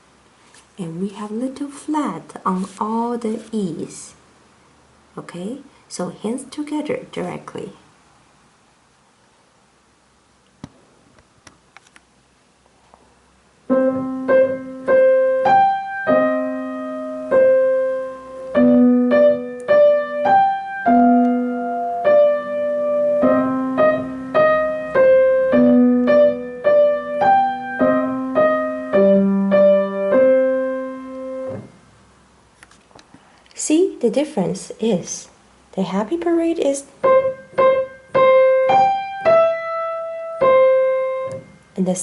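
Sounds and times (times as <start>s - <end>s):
minor key piano piece: 13.6s - 31.8s, 37.0s - 42.0s.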